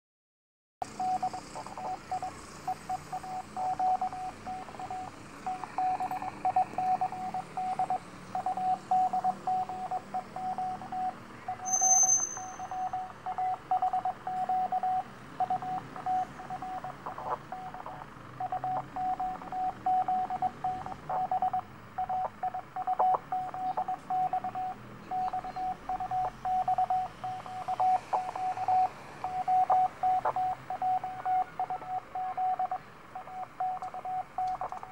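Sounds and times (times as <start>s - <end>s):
morse code tone: 0.8s - 34.9s
radio hiss and static crackle: 0.9s - 7.3s, 15.8s - 19.6s
short high beep: 5.8s - 15.0s.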